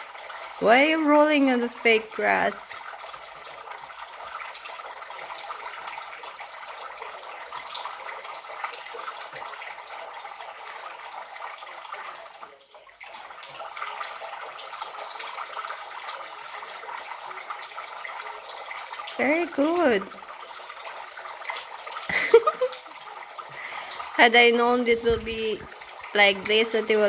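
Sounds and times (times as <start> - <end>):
fountain water splashing: 13.2 - 27.0.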